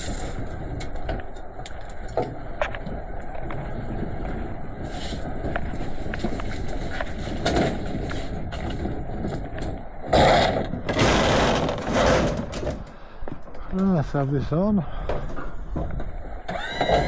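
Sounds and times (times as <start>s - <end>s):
steady low rumble: 0.0s - 16.5s
scrap metal scraping: 10.1s - 12.9s.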